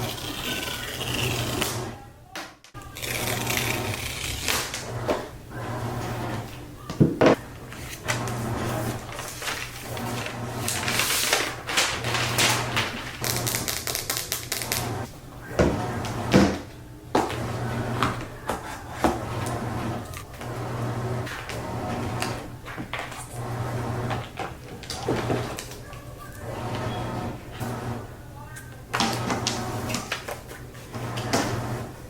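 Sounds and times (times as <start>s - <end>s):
paper and cardboard rustling: 6.1s - 14.7s.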